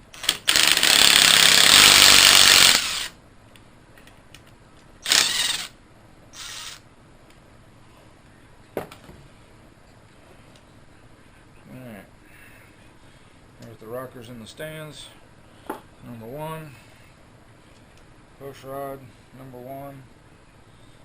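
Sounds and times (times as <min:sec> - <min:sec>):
impact wrench bursts: 0:00.1 - 0:03.2, 0:05.0 - 0:05.8, 0:06.4 - 0:06.8.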